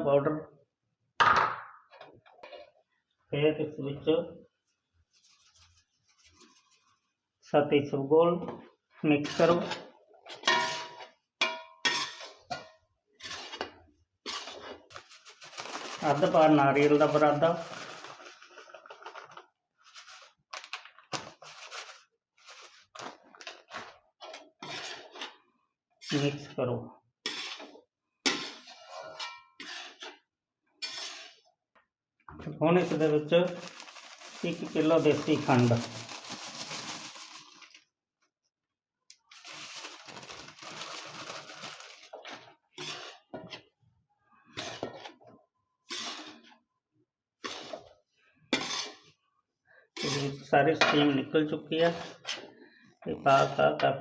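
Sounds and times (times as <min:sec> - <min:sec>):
spatula scraping dry mixture: 0:05.0 - 0:07.2, 0:09.2 - 0:11.2, 0:11.8 - 0:12.6, 0:13.2 - 0:20.5, 0:21.2 - 0:26.5, 0:27.2 - 0:31.6, 0:32.7 - 0:37.7, 0:40.8 - 0:43.8, 0:44.4 - 0:46.7, 0:47.4 - 0:49.2, 0:49.9 - 0:50.5, 0:51.8 - 0:52.6.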